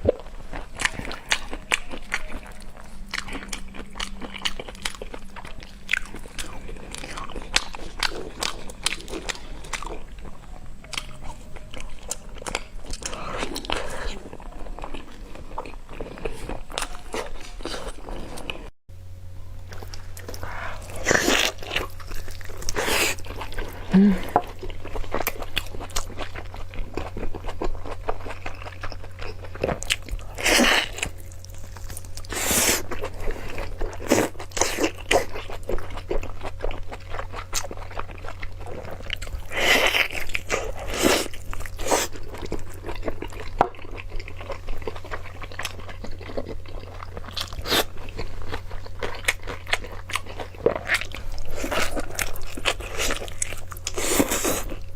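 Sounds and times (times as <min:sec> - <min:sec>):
steady low hum: 0:00.0 - 0:54.9
person biting and crunching food: 0:19.7 - 0:54.9.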